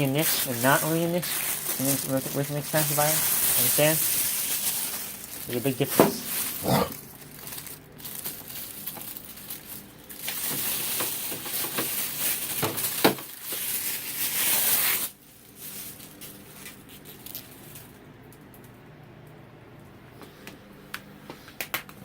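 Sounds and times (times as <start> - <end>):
packaging rustling and crinkling: 0.0 - 18.0.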